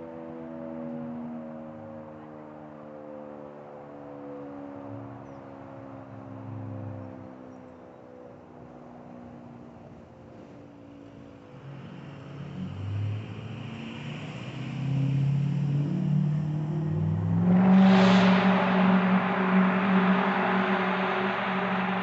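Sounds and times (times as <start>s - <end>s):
mechanical fire siren: 0.1s - 6.9s.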